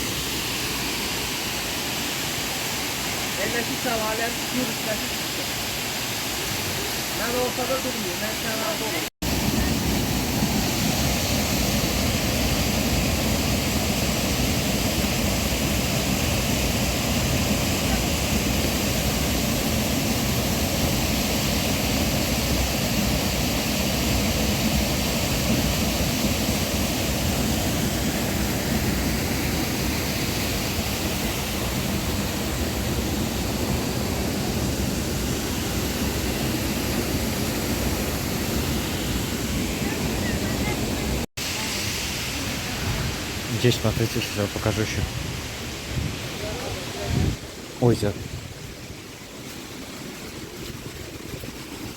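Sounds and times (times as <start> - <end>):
waterfall rushing: 0.0 - 51.9.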